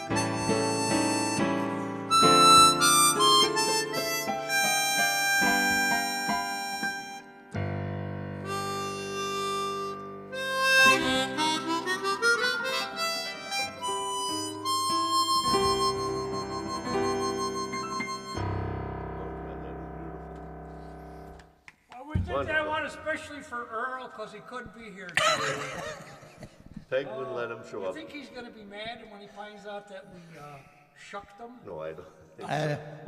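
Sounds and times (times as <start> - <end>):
harmonica melody: 0.0 - 21.4
keyboard accompaniment: 0.0 - 21.6.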